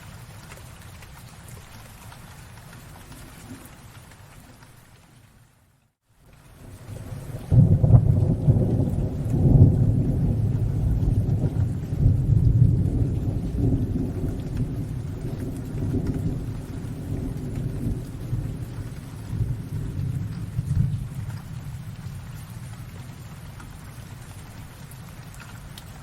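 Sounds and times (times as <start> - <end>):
steady rain: 0.0 - 26.0
thunder rumbling: 6.6 - 24.8.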